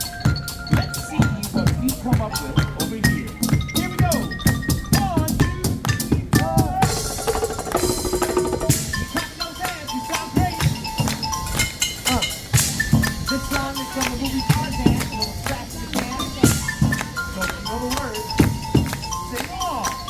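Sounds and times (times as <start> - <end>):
live percussion music: 0.0 - 20.0.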